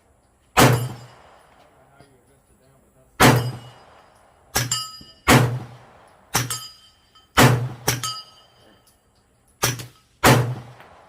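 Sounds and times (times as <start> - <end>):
suppressed gunshots: 0.5 - 1.8, 3.2 - 6.7, 7.4 - 8.1, 9.6 - 11.0
sharp metallic rings: 0.6 - 1.5, 3.3 - 5.3, 6.0 - 10.2.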